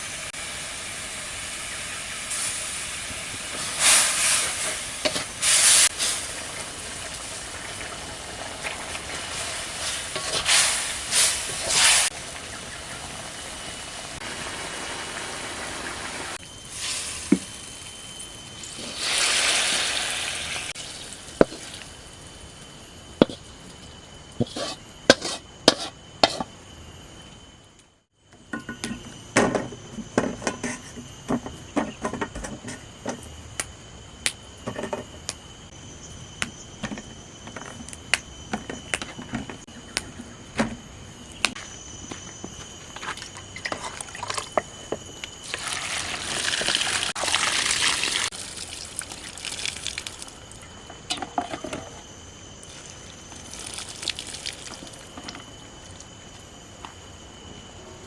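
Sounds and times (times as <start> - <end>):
food sizzling in a pan: 0.0 - 22.1, 45.4 - 50.5, 52.7 - 55.1.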